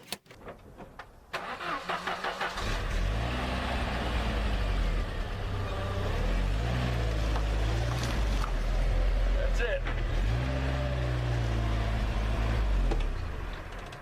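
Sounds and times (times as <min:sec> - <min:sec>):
engine starter cranking: 0:00.0 - 0:00.4, 0:01.4 - 0:02.6.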